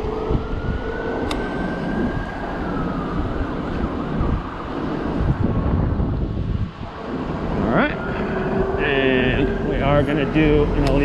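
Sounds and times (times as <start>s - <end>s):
siren wailing: 0.0s - 11.0s
wind and road noise: 0.0s - 11.0s.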